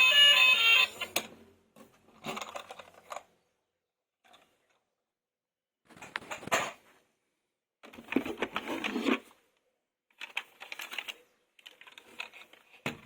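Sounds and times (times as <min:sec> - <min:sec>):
plastic toys and packaging handled: 0:00.0 - 0:05.0, 0:05.8 - 0:07.1, 0:07.8 - 0:13.0.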